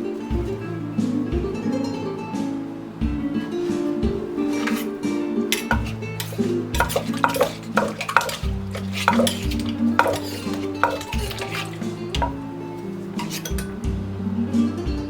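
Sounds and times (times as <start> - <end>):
acoustic guitar music: 0.0 - 15.0
utensil clicking against a bowl: 5.6 - 12.4.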